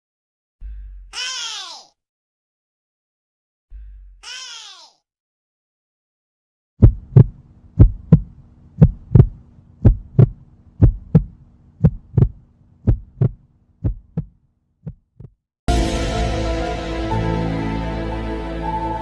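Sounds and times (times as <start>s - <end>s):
faint low hum: 6.8s - 13.4s
heartbeat thumps: 6.8s - 15.4s.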